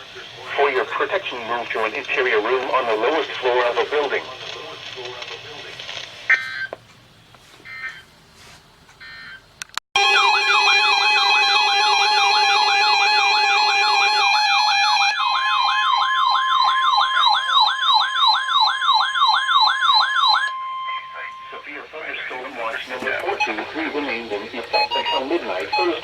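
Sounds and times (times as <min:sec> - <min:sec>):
faint data bursts: 0:00.0 - 0:06.8, 0:20.7 - 0:26.0
electronic alarm tones: 0:07.7 - 0:08.1, 0:09.0 - 0:09.4, 0:10.0 - 0:22.3, 0:23.3 - 0:24.0, 0:24.7 - 0:26.0
sweeping siren-like tone: 0:10.0 - 0:21.6.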